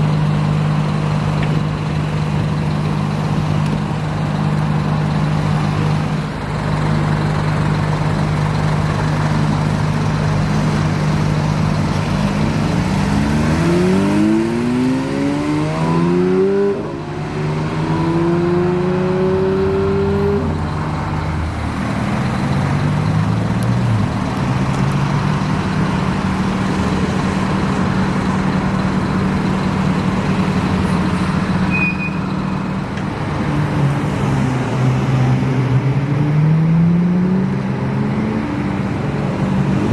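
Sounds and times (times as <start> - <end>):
sports car engines revving: 8.8 - 39.9.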